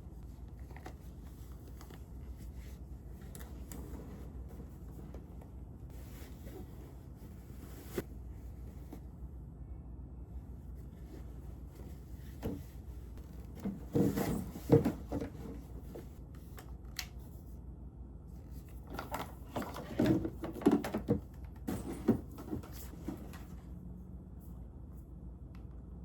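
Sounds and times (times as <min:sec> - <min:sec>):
objects knocking and rustling: 0:12.2 - 0:16.2, 0:18.9 - 0:23.5.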